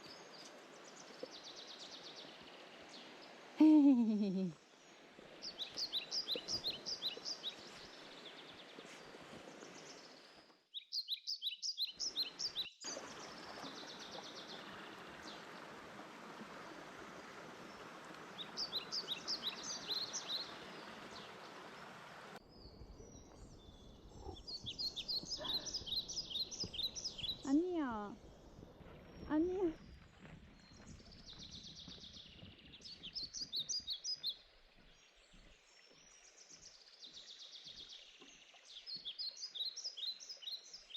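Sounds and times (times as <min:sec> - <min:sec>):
birds chirping: 0:00.0 - 0:40.9
stream rushing: 0:12.2 - 0:22.4.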